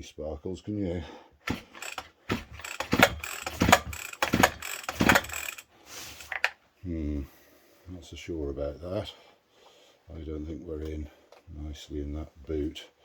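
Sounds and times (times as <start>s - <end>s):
engine turning over: 1.5s - 6.5s
recoil starter ratcheting: 1.5s - 6.5s.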